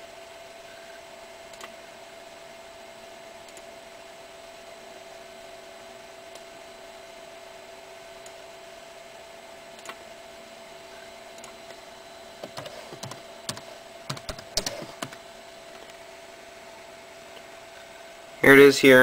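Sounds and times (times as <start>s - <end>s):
faint electrical hum: 0.0s - 19.0s
keyboard keys clicking: 12.4s - 15.2s.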